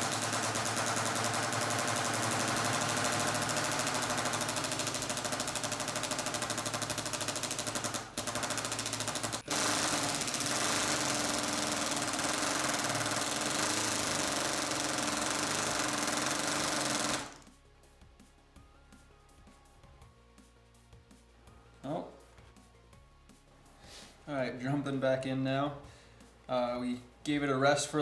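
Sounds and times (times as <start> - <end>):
impact driver hammering: 0.0 - 17.5.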